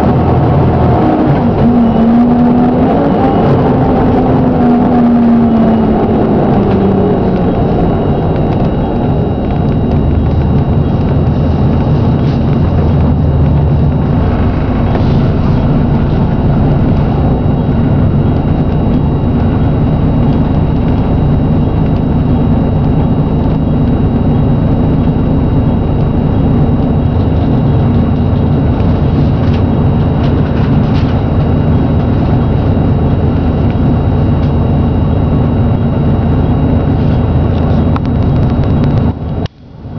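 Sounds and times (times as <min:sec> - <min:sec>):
bus engine knocking: 0:03.4 - 0:22.6, 0:26.3 - 0:34.6.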